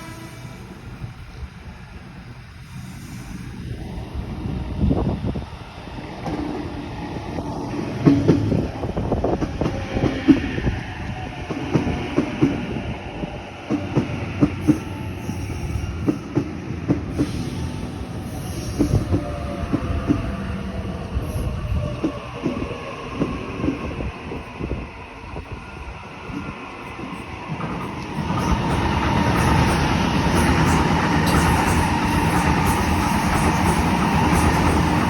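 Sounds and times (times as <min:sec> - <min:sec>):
train rumble: 0:00.0 - 0:35.0
train wheels clickety-clack: 0:07.7 - 0:10.7, 0:11.4 - 0:12.8, 0:13.6 - 0:20.5, 0:26.3 - 0:35.0.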